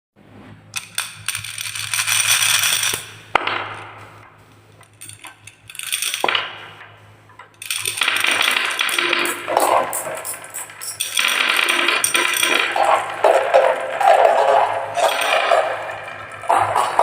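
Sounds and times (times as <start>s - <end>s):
marbles rattling down a marble run: 0.8s - 3.8s, 4.9s - 6.7s, 7.6s - 17.0s
sharp clicks: 7.8s - 14.1s.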